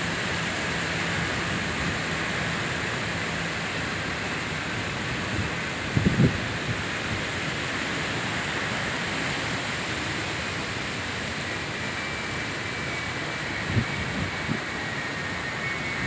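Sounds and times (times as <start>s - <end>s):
wind buffets on microphone: 4.6s - 8.9s, 13.2s - 16.0s
strong wind and surf: 5.0s - 7.6s.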